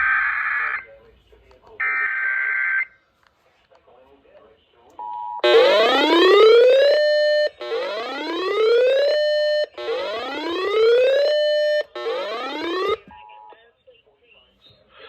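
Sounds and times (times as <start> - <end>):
electronic whooping alert tone: 5.4 - 13.0.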